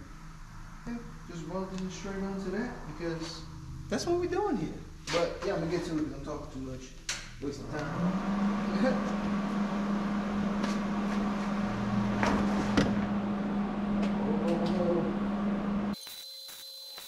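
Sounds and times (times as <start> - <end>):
welder humming: 7.7 - 17.0
welding crackling hiss with pops: 16.0 - 17.0.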